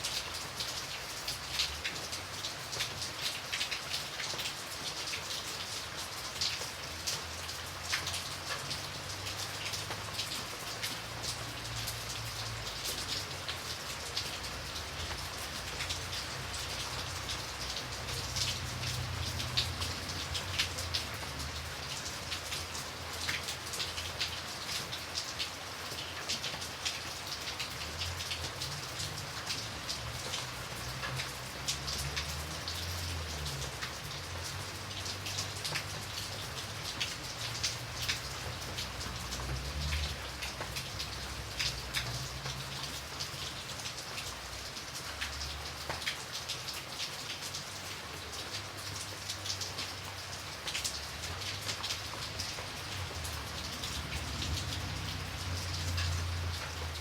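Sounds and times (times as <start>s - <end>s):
rain drops ticking on surface: 0.0s - 57.0s.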